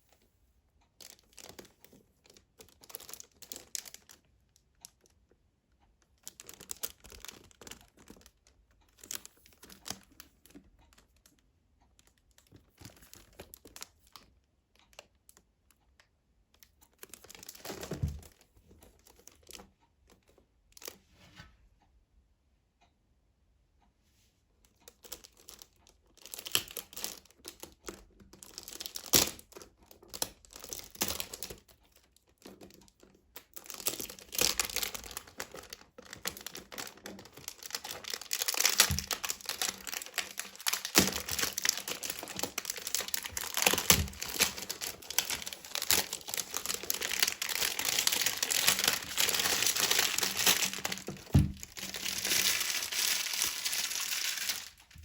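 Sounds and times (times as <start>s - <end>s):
wrapping crinkling and tearing: 1.0s - 4.3s, 6.2s - 11.0s, 16.9s - 19.6s, 24.8s - 55.0s
packaging handling clicks: 33.4s - 55.0s.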